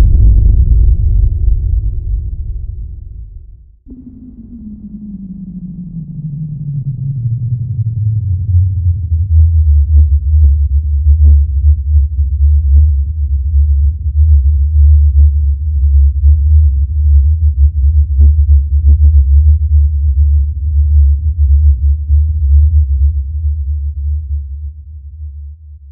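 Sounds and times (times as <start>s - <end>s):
deep synthesized drone: 0.0s - 24.0s.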